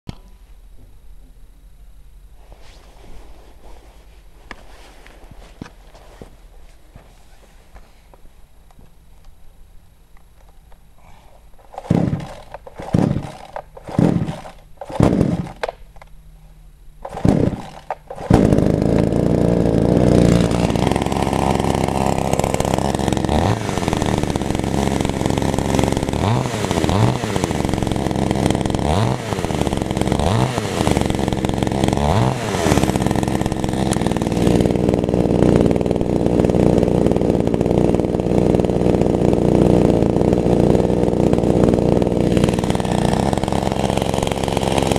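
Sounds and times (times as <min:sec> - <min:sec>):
chainsaw pull-starting and running: 0:11.6 - 0:16.1, 0:17.0 - 0:44.9.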